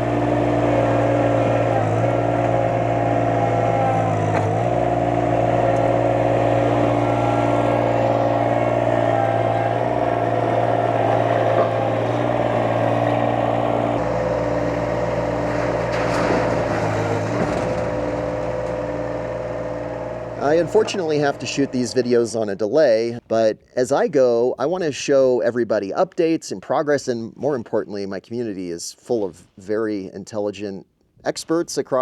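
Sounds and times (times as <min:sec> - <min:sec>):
loader engine running: 0:00.0 - 0:24.9.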